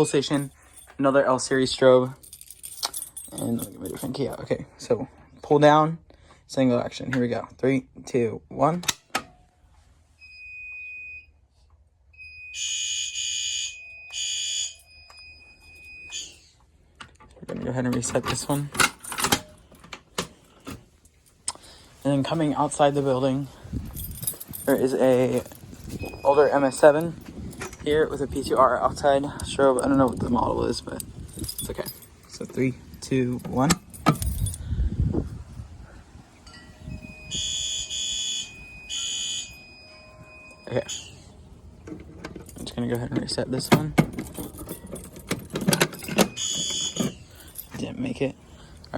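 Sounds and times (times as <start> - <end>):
fire alarm horn blasts: 12.1 - 16.4, 36.7 - 41.5, 46.3 - 47.2
high-pitched electronic tone: 36.5 - 41.4
fire alarm pull station thump: 37.0 - 42.5, 45.2 - 47.2.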